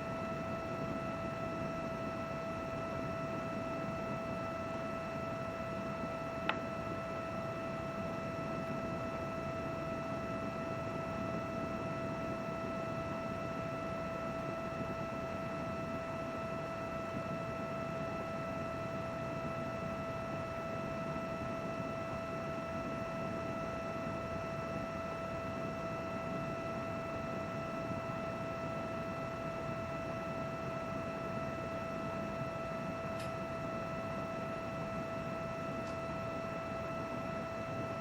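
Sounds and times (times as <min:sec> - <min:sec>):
computer fan whir: 0:00.0 - 0:38.0.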